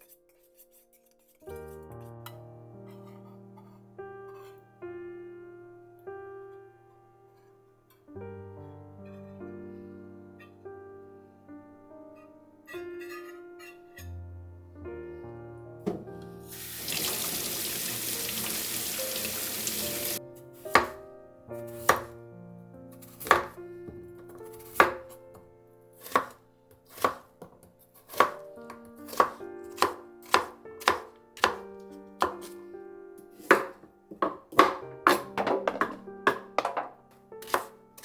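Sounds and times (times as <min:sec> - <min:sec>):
knife chopping on cutting board: 0:15.8 - 0:16.1, 0:20.7 - 0:21.0, 0:21.7 - 0:22.1, 0:23.0 - 0:23.6, 0:24.5 - 0:25.2, 0:26.0 - 0:32.6, 0:33.4 - 0:37.8
water running: 0:15.9 - 0:20.2.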